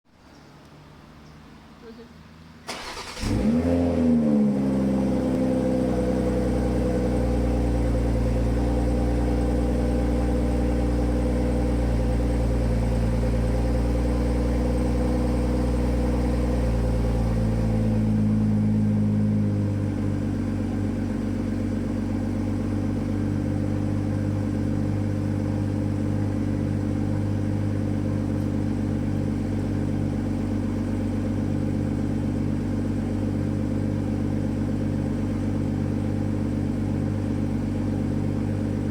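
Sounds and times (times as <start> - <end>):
car engine idling: 0.2 - 38.9.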